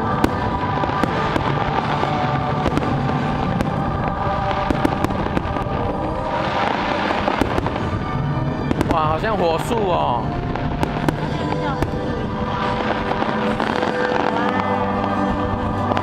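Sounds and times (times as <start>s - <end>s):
fireworks bangs and crackling: 0.0s - 16.0s
music with held tones: 0.0s - 16.0s.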